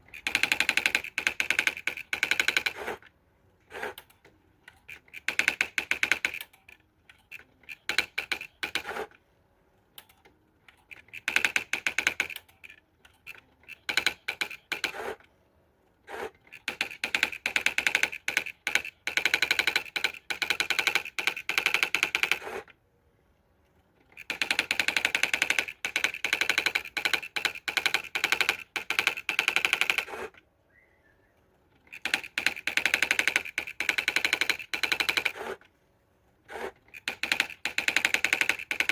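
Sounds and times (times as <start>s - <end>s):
electronic typewriter strikes: 0.0s - 3.0s, 4.8s - 6.5s, 7.2s - 9.1s, 10.9s - 15.2s, 16.1s - 22.7s, 24.2s - 30.3s, 31.9s - 35.6s, 36.5s - 38.9s.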